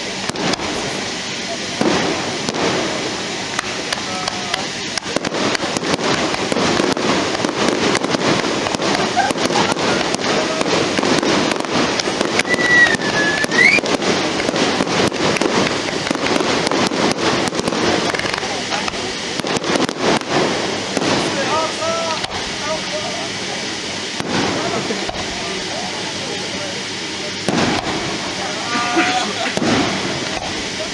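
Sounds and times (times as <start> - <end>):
firework whistle: 0.0 - 30.9
fireworks crackling and popping: 0.0 - 30.9.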